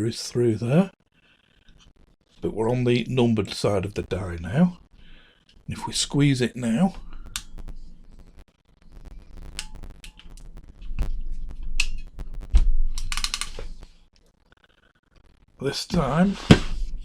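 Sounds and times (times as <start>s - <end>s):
ratcheting crimper clicking: 13.0s - 13.6s
handling noise: 15.9s - 16.9s.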